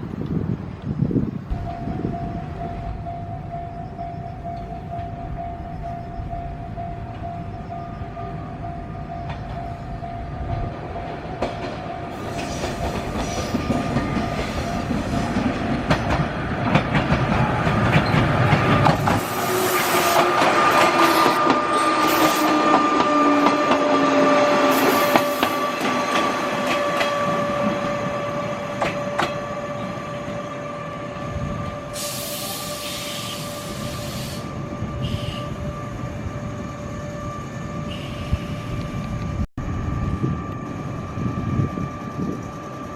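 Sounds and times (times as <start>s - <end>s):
train wheels clicking over rails: 10.8s - 28.0s
high brake squeal: 12.1s - 14.9s, 31.9s - 35.7s, 37.9s - 38.8s.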